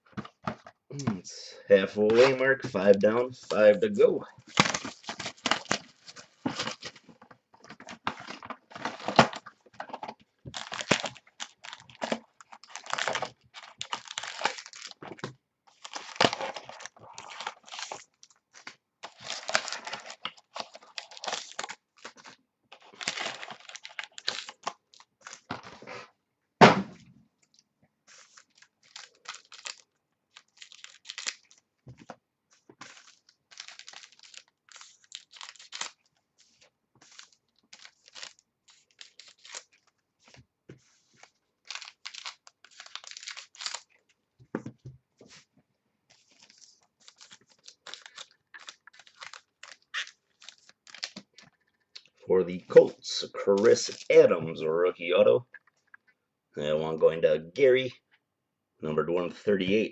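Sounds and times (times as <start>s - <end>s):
packaging rustling: 4.4s - 25.9s, 27.4s - 45.5s, 46.1s - 52.2s
plastic wrap crinkling and tearing: 4.5s - 7.0s, 7.9s - 25.9s, 27.5s - 31.9s, 32.5s - 44.1s, 46.1s - 52.8s, 53.4s - 54.2s
loud thump: 26.6s - 27.0s.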